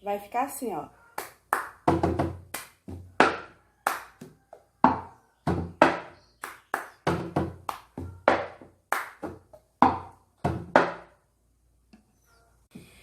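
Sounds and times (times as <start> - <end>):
hand claps: 1.2 - 4.7, 5.9 - 9.7.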